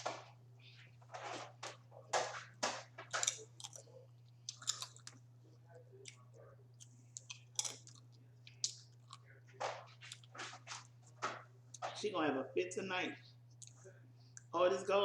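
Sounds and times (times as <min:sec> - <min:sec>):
steady low hum: 0:00.0 - 0:15.0
wet chewing and mouth smacks: 0:03.2 - 0:05.3, 0:06.0 - 0:09.3, 0:13.4 - 0:14.5.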